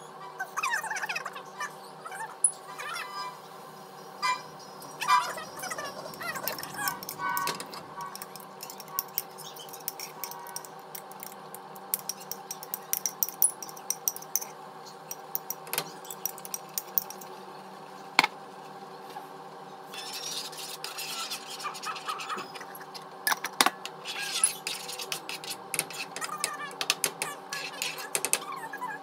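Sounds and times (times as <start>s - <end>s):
steady hum: 3.4s - 29.0s
utensil clinking against pan: 6.1s - 11.4s.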